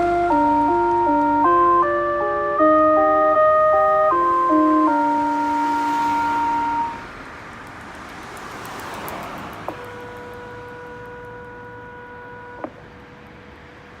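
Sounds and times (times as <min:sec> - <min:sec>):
steady tone: 0:00.0 - 0:07.1
vehicle passing: 0:00.0 - 0:14.0.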